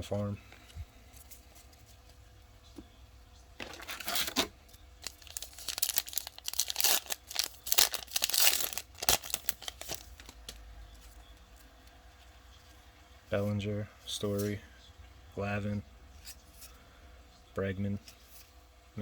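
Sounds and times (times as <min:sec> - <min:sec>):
foil wrapper tearing and crinkling: 0:03.6 - 0:10.6.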